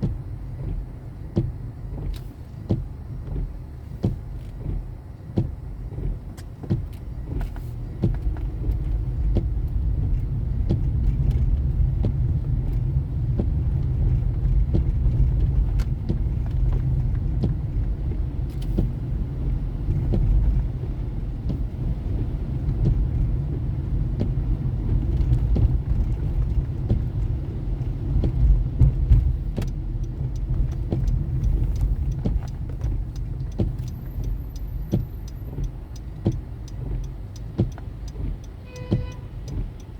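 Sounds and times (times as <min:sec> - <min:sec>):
car engine and road rumble: 0:00.0 - 0:39.9
light clicks and rattles: 0:22.6 - 0:39.9.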